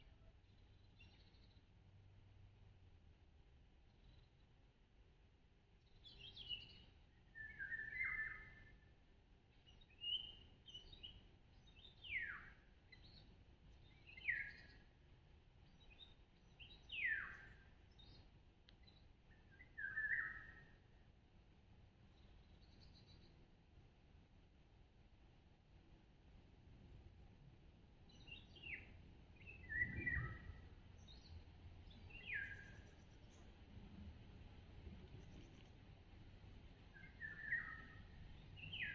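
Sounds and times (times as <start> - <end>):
songbird calling: 19.6 - 20.6, 28.2 - 33.5, 37.0 - 38.9.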